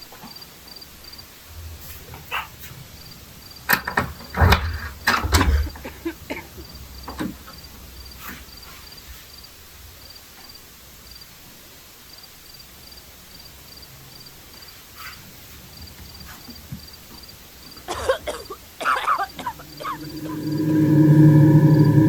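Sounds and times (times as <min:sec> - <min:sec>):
insect chirping: 0:03.0 - 0:04.4.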